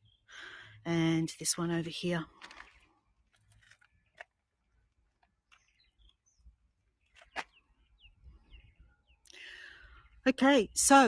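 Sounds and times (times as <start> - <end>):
faint bird chirps: 5.5 - 10.3.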